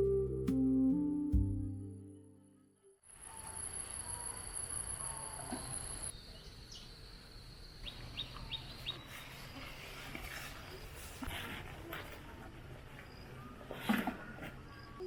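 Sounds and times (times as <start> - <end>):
high insect trill: 3.1 - 8.2
insects trilling: 3.1 - 9.0
bird chirping: 3.2 - 9.5.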